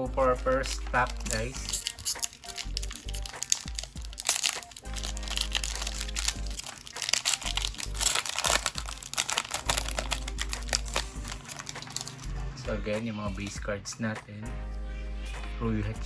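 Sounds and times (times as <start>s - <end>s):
background music: 0.0s - 16.0s
card pack wrapper crinkling and tearing: 0.3s - 12.4s.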